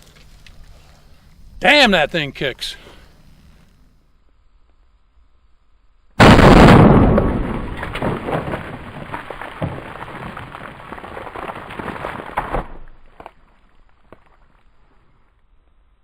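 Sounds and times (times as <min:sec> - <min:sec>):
shotgun blast: 0:06.2 - 0:08.4
scattered cracks and spatter: 0:06.2 - 0:14.8.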